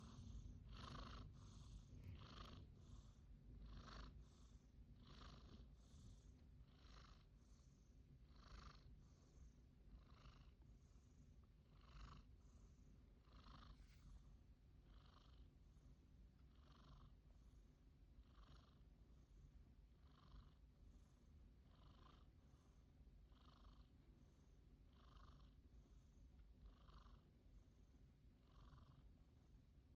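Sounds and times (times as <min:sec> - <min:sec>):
faint snoring breaths: 0:00.0 - 0:14.2, 0:14.8 - 0:15.8, 0:20.0 - 0:27.8, 0:28.4 - 0:29.1.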